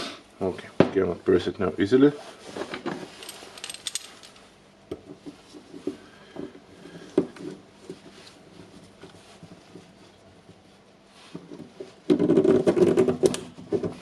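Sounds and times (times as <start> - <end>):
small metal parts clicking: 3.2 - 4.4.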